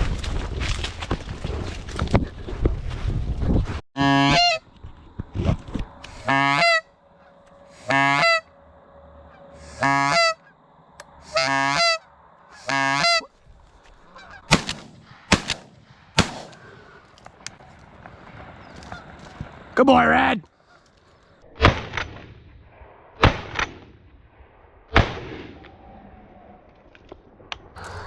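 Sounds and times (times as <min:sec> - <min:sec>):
goose honking: 0:04.0 - 0:04.6, 0:06.0 - 0:10.6, 0:11.2 - 0:13.3, 0:14.0 - 0:14.6.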